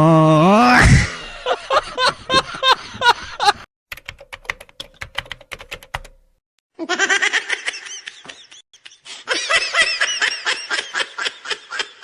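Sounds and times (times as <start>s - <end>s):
cartoonish high-pitched laughter: 6.8s - 12.0s.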